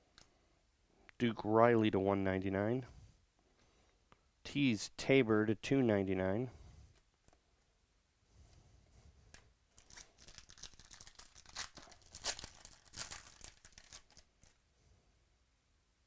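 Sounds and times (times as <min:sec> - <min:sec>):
foil wrapper tearing and crinkling: 0:09.8 - 0:14.6.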